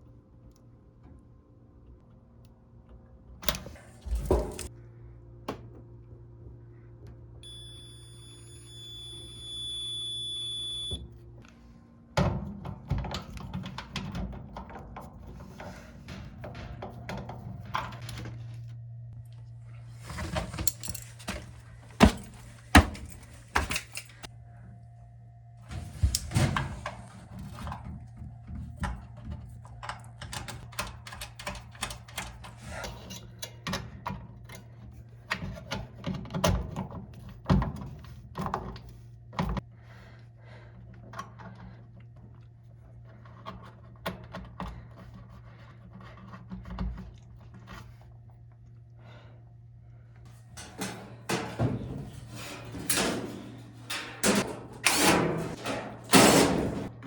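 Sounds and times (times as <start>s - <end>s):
steady low hum: 0.0s - 33.5s, 38.9s - 57.0s
tools and parts rattling: 20.2s - 24.3s, 50.3s - 57.0s.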